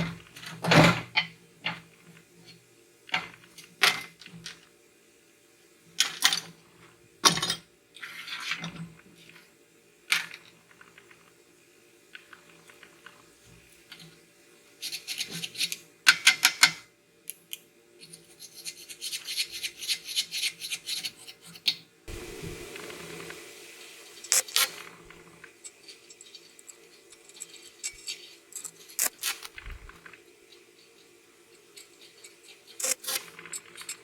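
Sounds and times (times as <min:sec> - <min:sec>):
steady hiss: 0:22.1 - 0:34.0.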